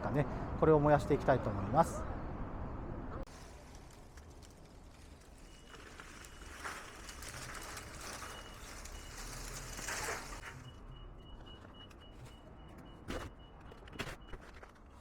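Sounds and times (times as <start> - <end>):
rustling noise: 3.3 - 10.7.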